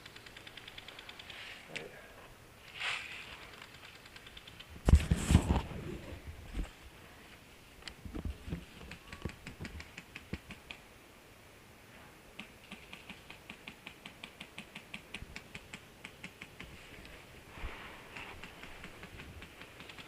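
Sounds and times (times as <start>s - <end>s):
rapid sharp clicks: 0.0s - 1.8s, 3.4s - 5.0s, 8.8s - 10.8s, 12.4s - 16.8s, 18.1s - 20.0s.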